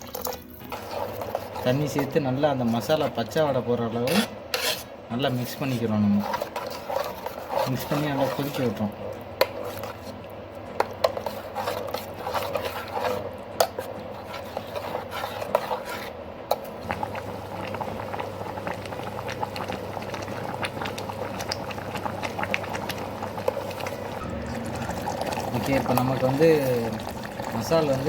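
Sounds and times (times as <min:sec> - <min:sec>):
spoon scraping metal pan: 0:00.0 - 0:08.8, 0:09.4 - 0:10.2, 0:10.8 - 0:16.7
gravy boiling with crackling ticks: 0:06.2 - 0:28.0.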